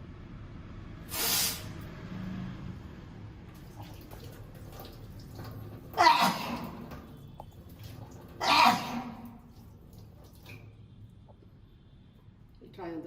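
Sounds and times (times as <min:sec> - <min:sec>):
sharp rush of breath: 0:01.1 - 0:01.8.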